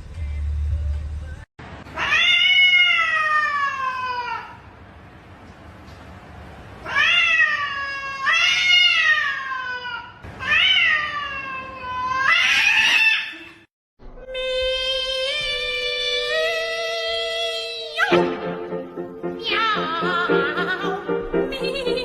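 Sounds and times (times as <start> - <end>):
cat meowing loudly: 1.9 - 4.6, 6.8 - 13.5.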